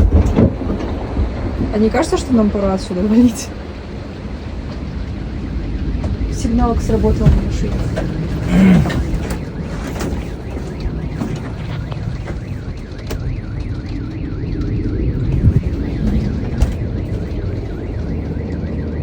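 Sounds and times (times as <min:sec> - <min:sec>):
car alarm wailing: 0:00.0 - 0:19.0
steady low rumble: 0:00.0 - 0:19.0.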